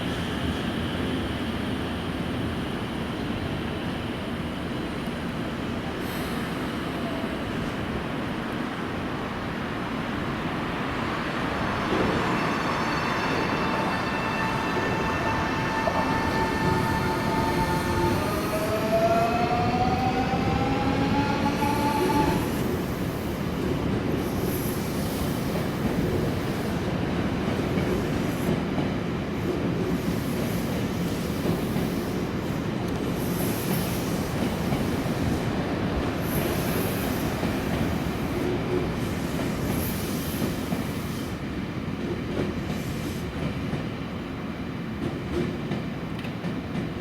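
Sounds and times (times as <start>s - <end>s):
train rumble: 9.4s - 47.0s.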